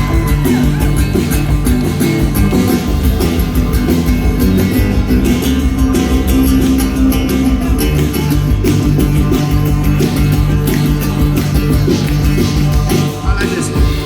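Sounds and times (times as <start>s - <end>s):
live rock band playing: 0.0s - 14.0s
plucked guitar: 0.0s - 14.0s
steady drum beat: 0.0s - 14.0s.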